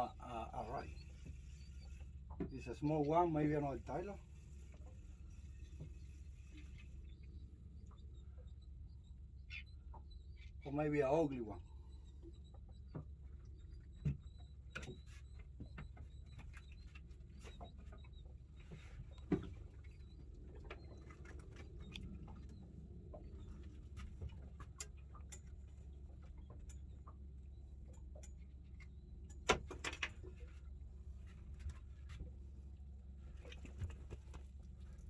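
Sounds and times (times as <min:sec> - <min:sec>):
low steady rumble: 0:00.0 - 0:35.0
light clicks and taps: 0:14.0 - 0:30.4.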